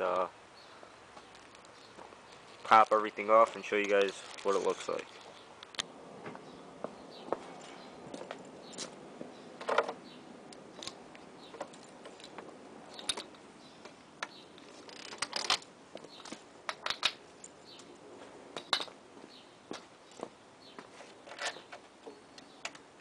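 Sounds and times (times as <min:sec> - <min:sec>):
objects handled clicking and tapping: 0:10.6 - 0:17.9, 0:18.6 - 0:19.0, 0:19.7 - 0:23.0.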